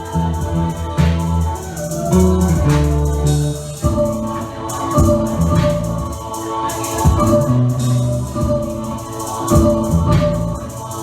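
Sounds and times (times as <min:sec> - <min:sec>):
electronic bass and chord tones: 0:00.0 - 0:06.3
rattling shaker-like percussion: 0:00.0 - 0:11.0.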